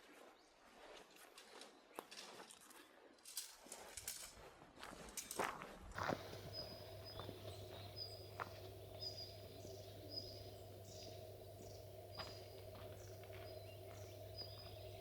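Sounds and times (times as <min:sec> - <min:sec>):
bird chirping: 0:06.0 - 0:15.0
steady low hum: 0:06.0 - 0:15.0.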